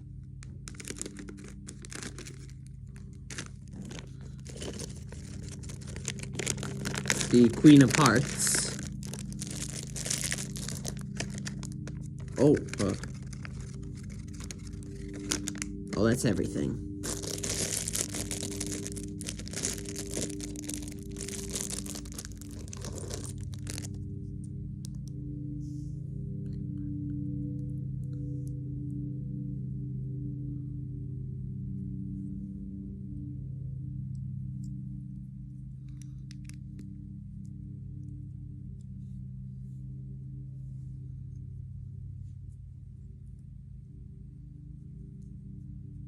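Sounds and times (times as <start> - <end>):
plastic packet crinkling: 0.4 - 16.3, 17.0 - 24.0.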